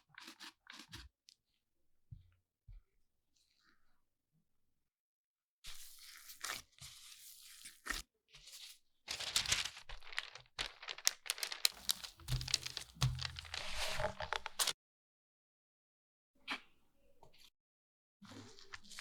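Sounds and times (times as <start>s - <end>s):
wrapping crinkling and tearing: 9.1s - 14.8s.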